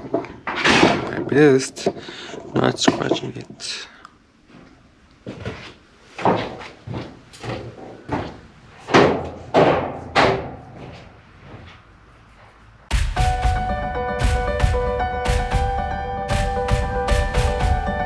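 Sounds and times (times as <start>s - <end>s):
hollow knocks on plastic grille: 12.9s - 18.0s
music: 12.9s - 18.0s.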